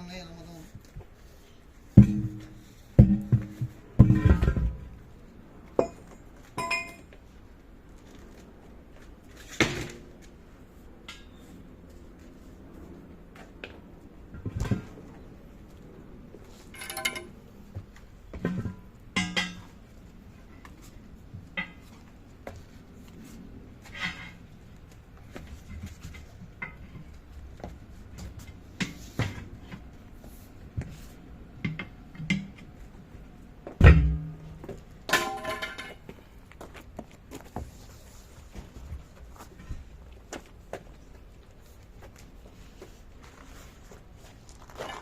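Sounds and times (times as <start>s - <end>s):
heavy thump: 2.0s - 5.0s, 33.8s - 34.8s
ringing metal clangs: 5.8s - 7.1s, 16.8s - 17.4s, 18.6s - 19.7s
metal tools clinking: 6.6s - 7.1s, 16.7s - 17.4s.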